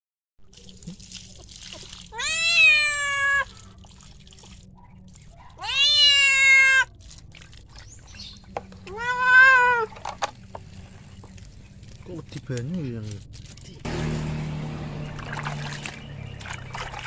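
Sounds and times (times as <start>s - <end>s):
cat meowing: 2.1s - 3.6s, 5.6s - 6.9s, 8.9s - 9.9s.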